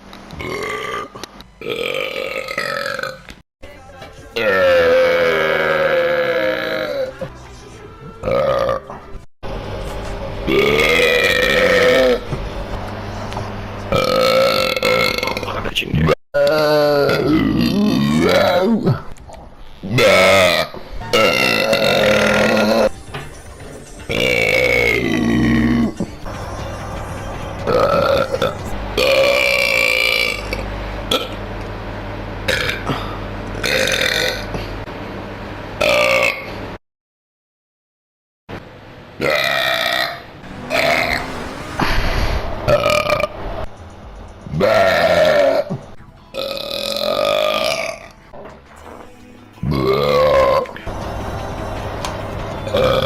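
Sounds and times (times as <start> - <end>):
man burping: 0.4 - 3.3, 4.4 - 7.1, 8.2 - 8.9, 10.5 - 12.2, 13.9 - 19.1, 19.8 - 22.9, 24.1 - 26.0, 27.7 - 31.4, 32.5 - 34.7, 39.2 - 41.2, 44.6 - 45.8, 46.4 - 48.1, 49.6 - 50.8.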